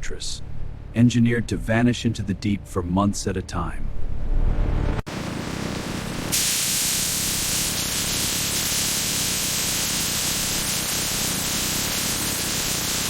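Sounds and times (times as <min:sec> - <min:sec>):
loud steady hiss: 0:05.1 - 0:13.0.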